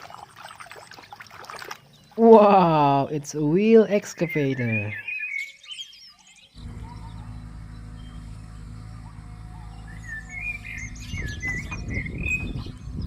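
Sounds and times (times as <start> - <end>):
birds chirping: 0.0 - 13.0
low mechanical hum: 6.6 - 13.0.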